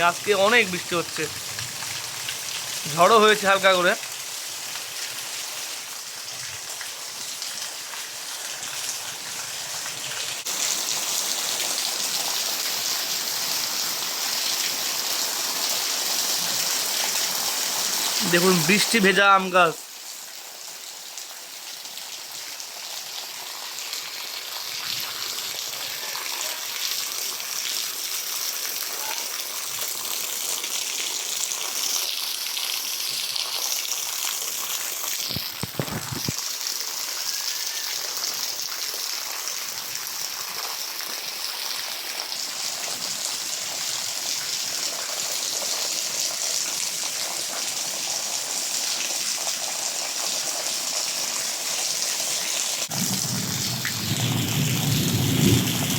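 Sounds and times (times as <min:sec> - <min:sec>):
heavy rain falling: 0:00.0 - 0:19.8, 0:52.6 - 0:55.9.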